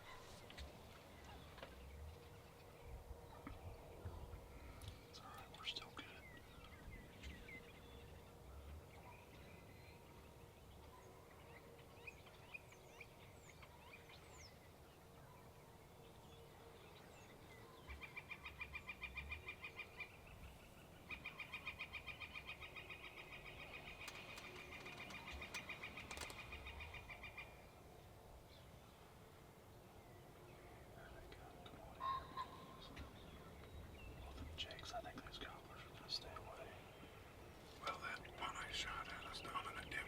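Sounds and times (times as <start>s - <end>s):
small birds chirping: 0.1s - 27.8s, 30.3s - 40.0s
bird rapid trill: 23.8s - 27.2s.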